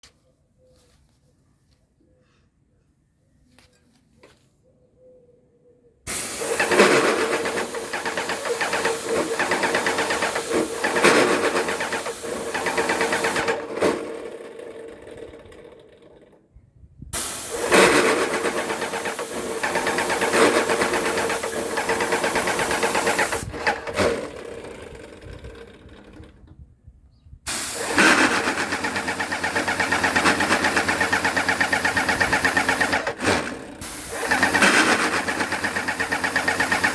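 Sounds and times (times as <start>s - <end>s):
paint sprayer motor chattering: 6.1s - 16.3s, 17.2s - 26.5s, 27.5s - 36.9s.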